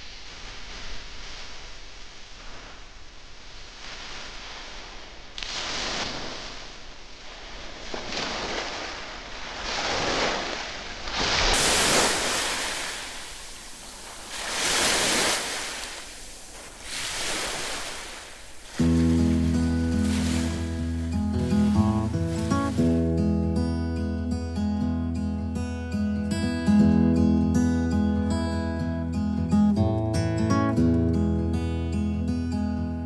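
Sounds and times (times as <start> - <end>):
ocean waves breaking: 0.0 - 23.5.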